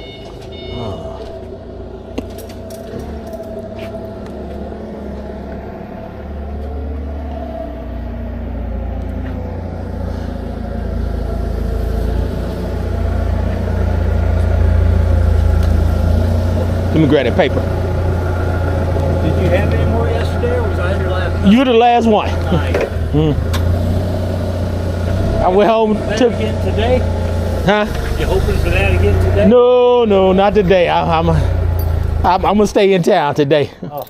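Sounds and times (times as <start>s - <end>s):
vehicle engine low rumble: 0.0s - 34.0s.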